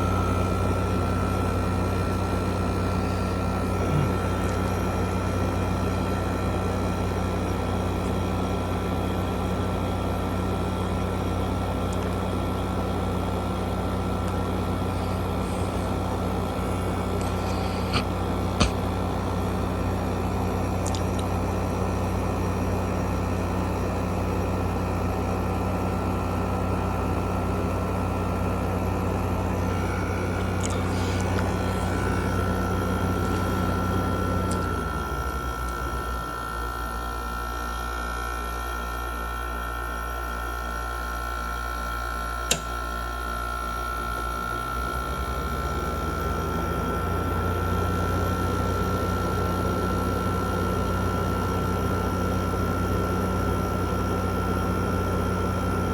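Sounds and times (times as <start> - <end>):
air conditioner humming: 0.0 - 24.8, 25.8 - 39.2
sharp click: 42.5 - 42.8.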